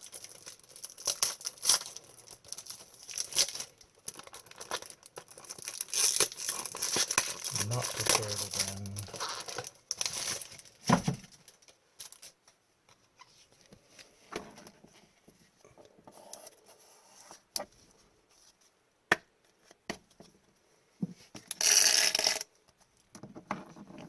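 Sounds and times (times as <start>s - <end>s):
foil wrapper crinkling: 0.0s - 12.4s.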